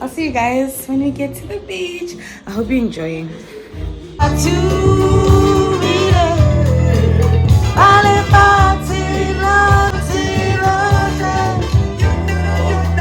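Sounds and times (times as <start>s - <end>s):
pop music: 0.0s - 13.0s
person singing: 4.1s - 13.0s.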